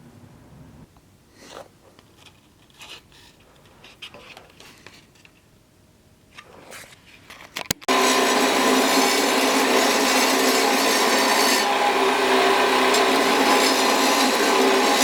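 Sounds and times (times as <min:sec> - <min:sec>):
rustles and scrapes of handling: 0:01.3 - 0:05.6, 0:06.3 - 0:07.7.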